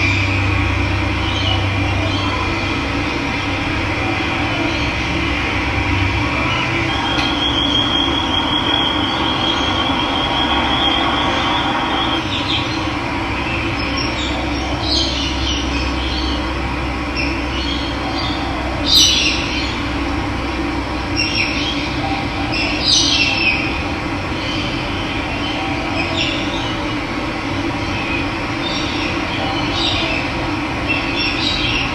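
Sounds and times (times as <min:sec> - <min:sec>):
birds chirping: 0:00.0 - 0:20.0.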